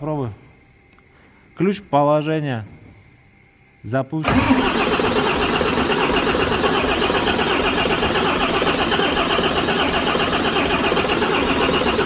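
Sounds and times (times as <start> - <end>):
diesel engine cranking on starter: 4.2 - 12.0.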